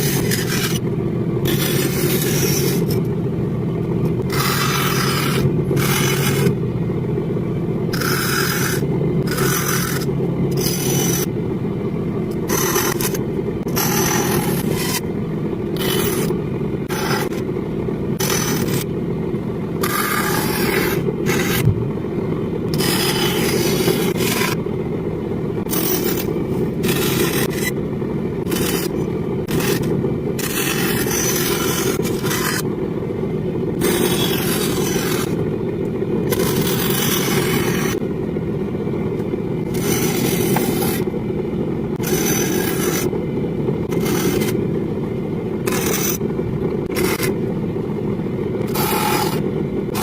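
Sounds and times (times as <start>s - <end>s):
wood scraping: 0.0s - 0.8s, 1.4s - 3.1s, 4.1s - 6.6s, 7.9s - 11.3s, 15.7s - 17.4s, 28.4s - 32.7s, 33.8s - 35.4s, 36.2s - 38.0s, 39.6s - 41.1s, 42.0s - 43.1s
power tool motor running: 0.0s - 3.0s, 4.1s - 6.6s, 7.9s - 11.3s, 12.3s - 17.4s, 18.2s - 18.9s, 19.8s - 21.9s, 22.7s - 24.6s, 25.6s - 27.8s, 28.4s - 32.7s, 33.7s - 38.0s, 39.6s - 41.1s, 42.0s - 43.2s, 43.8s - 44.6s, 45.6s - 47.4s, 48.6s - 50.0s
steady low hum: 0.0s - 50.0s.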